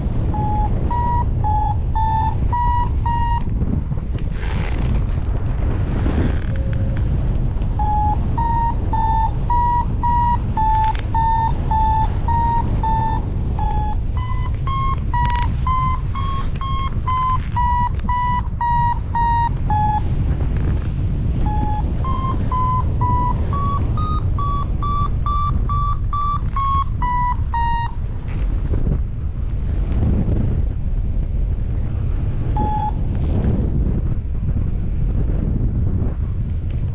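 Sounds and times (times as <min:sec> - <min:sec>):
variometer beeping: 0:00.0 - 0:04.0, 0:06.5 - 0:20.7, 0:21.3 - 0:28.1, 0:32.5 - 0:33.2
wind rumble on microphone: 0:00.0 - 0:36.9.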